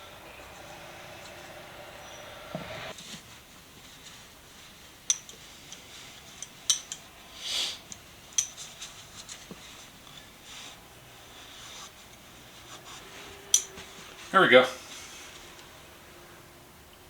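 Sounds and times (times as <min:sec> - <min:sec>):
metallic clinks of pliers: 0:06.4 - 0:07.0.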